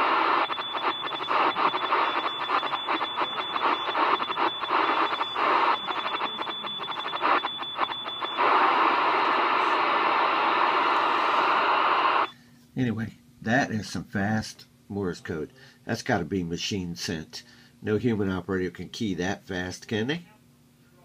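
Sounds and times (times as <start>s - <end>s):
fast morse code tone: 0.0s - 10.9s
radio static hiss: 0.0s - 12.3s.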